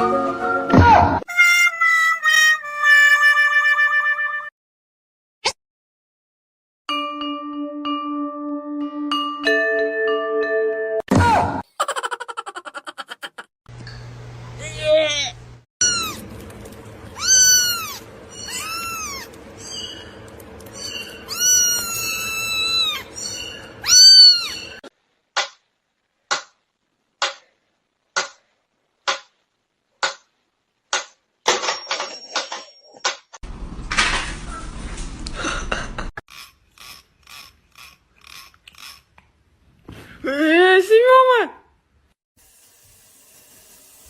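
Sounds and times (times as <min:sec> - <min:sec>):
cat meowing: 0:15.8 - 0:16.3, 0:17.2 - 0:19.4, 0:21.2 - 0:24.8.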